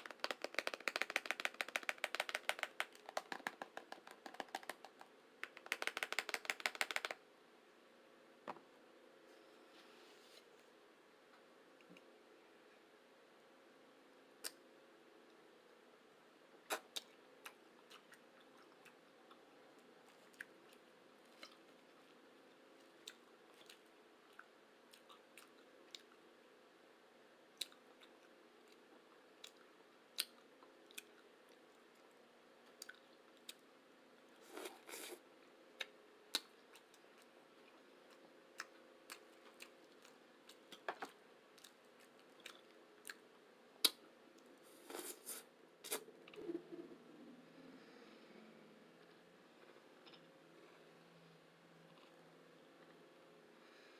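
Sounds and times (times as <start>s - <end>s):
faint steady hum: 0.0s - 53.9s
person chewing food: 16.7s - 19.4s, 20.0s - 22.2s, 22.8s - 26.2s, 35.8s - 43.2s, 49.0s - 50.8s.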